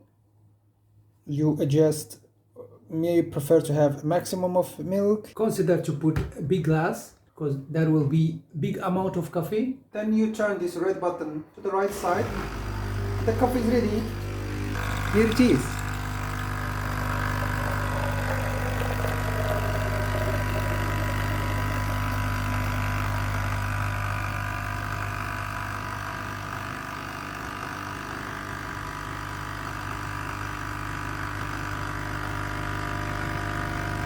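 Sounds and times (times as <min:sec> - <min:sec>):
coffee machine pump buzzing: 0:11.8 - 0:34.0.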